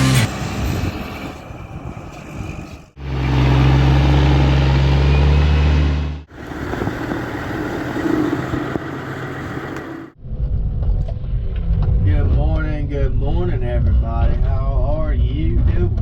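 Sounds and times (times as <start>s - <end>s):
heavy diesel machinery running: 0.0s - 10.2s.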